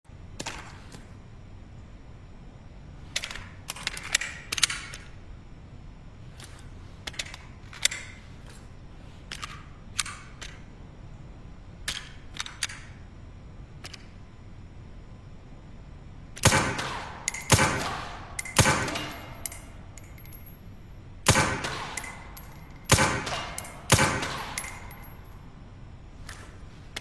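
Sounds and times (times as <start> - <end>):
suppressed pistol shots: 16.4 - 19.7, 21.2 - 25.1.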